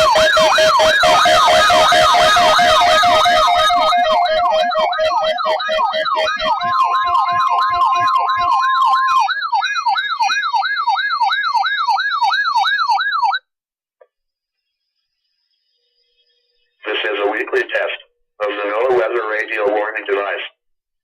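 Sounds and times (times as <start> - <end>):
steady tone: 0.0 - 9.3
electronic siren sweeping: 0.0 - 13.4.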